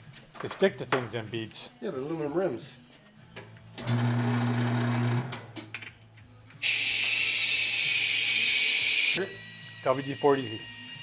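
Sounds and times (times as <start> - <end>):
small power tool whirring: 6.6 - 11.0.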